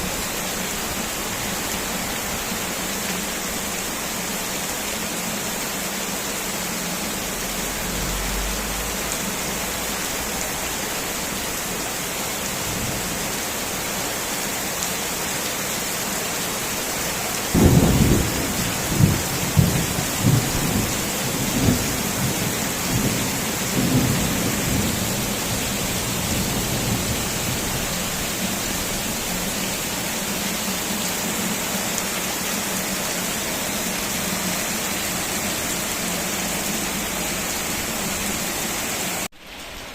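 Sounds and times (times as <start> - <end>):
heavy rain falling: 0.0 - 39.9
thunderclap rumbling: 17.6 - 29.0.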